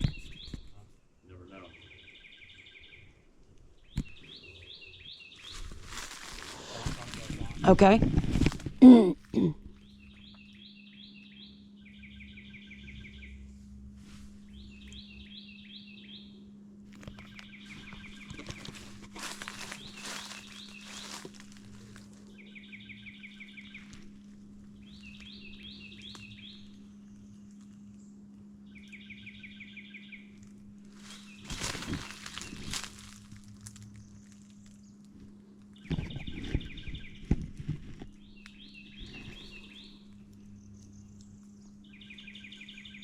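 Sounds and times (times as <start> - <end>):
songbird singing: 0.0 - 13.6, 14.4 - 43.0
faint low hum: 0.0 - 43.0.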